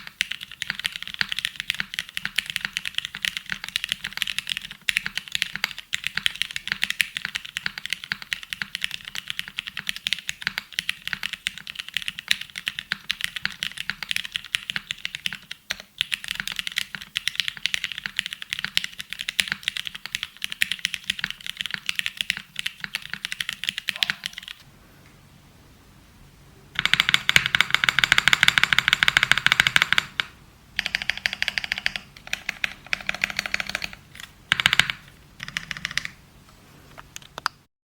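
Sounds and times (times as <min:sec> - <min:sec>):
rapid dense clicking: 0:26.8 - 0:36.2.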